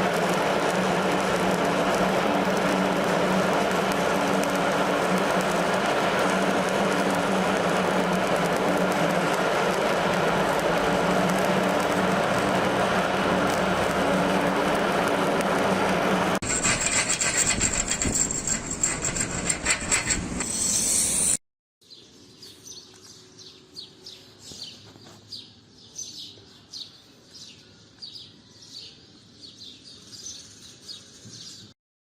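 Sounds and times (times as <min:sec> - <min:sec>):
welding arc crackling: 0:00.0 - 0:21.4.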